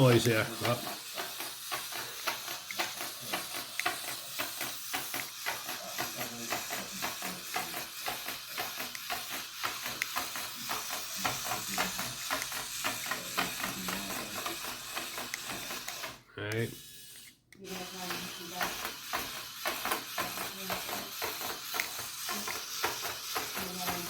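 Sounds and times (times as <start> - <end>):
robot spider clicking: 0.0 - 24.0.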